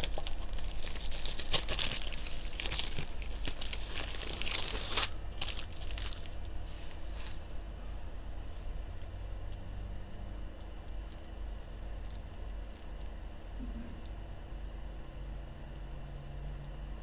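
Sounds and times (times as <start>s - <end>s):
plastic packaging crinkling: 0.0s - 9.6s, 10.6s - 14.2s.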